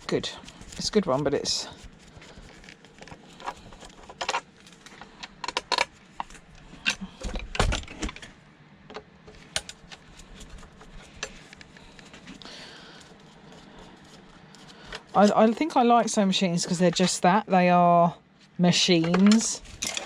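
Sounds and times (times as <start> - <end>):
metal clinks and rattles of parts: 19.0 - 20.0.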